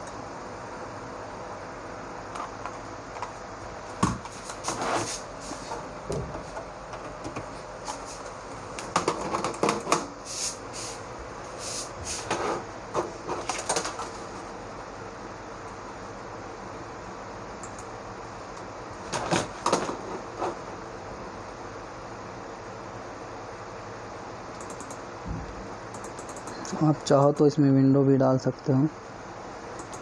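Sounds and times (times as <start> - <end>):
steady hum: 0.0 - 30.0
mouse and keyboard clicks: 24.6 - 25.0, 26.0 - 26.8.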